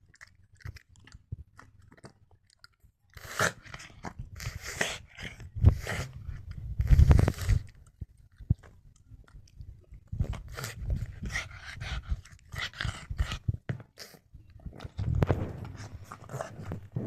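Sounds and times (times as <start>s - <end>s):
dog crunching on a bone: 0.0s - 17.0s
dog breathing noisily: 10.4s - 14.2s.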